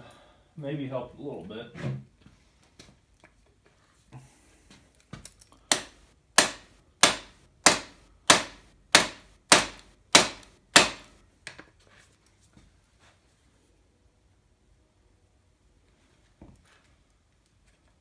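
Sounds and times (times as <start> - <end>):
hammer striking metal tool: 5.7 - 11.1.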